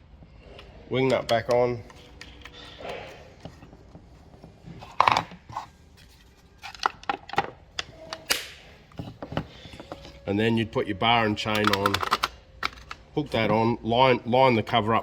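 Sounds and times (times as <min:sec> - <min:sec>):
clicks and knocks of parts handled: 0:00.5 - 0:10.2, 0:11.4 - 0:13.5.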